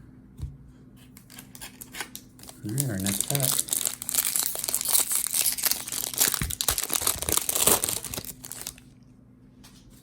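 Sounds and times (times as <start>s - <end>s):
foil wrapper tearing and crinkling: 1.3s - 8.9s.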